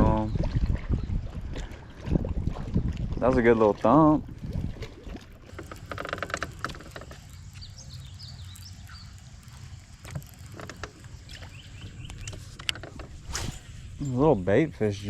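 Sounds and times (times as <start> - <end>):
boat engine hum: 0.0 - 15.0
water noise: 0.0 - 15.0.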